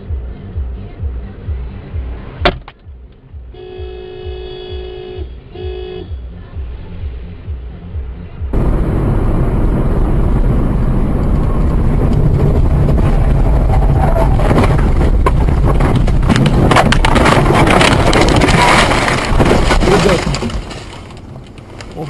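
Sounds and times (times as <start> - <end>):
vehicle interior rumble: 0.0 - 22.0
clicks and rattles: 14.2 - 22.0.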